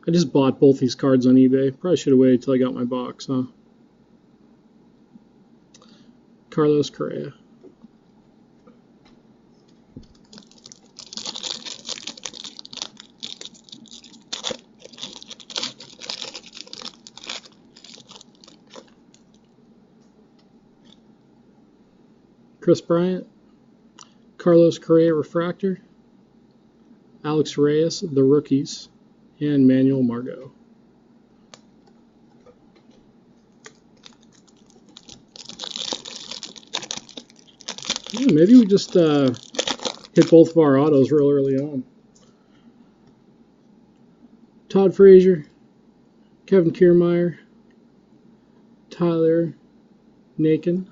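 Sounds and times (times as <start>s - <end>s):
foil wrapper tearing and crinkling: 10.1s - 19.4s, 33.6s - 40.6s.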